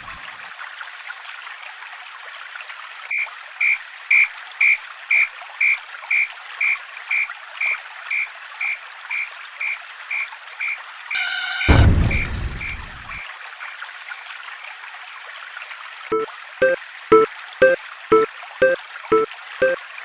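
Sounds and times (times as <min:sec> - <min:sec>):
level crossing warning bell: 0:16.1 - 0:19.8.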